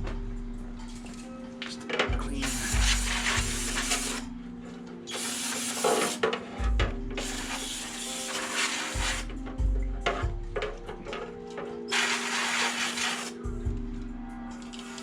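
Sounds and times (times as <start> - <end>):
jazz music: 0.0 - 15.0
aerosol spray hissing: 2.4 - 4.3, 5.1 - 6.2, 7.2 - 9.3, 11.9 - 13.5.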